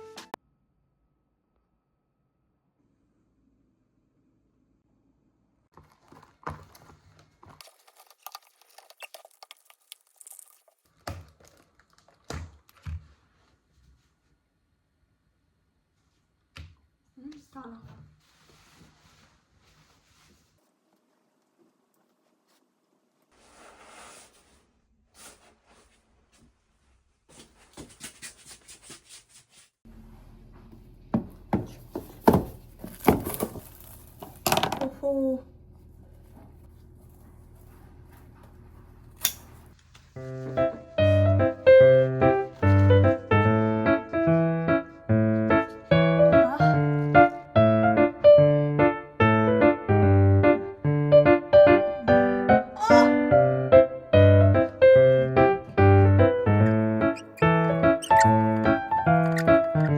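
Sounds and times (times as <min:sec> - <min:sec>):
handling rustle: 0:05.7 - 0:13.6, 0:31.7 - 0:35.0
crinkling and rustling: 0:05.7 - 0:14.4, 0:17.3 - 0:29.8, 0:30.4 - 0:43.2, 0:56.6 - 0:59.9.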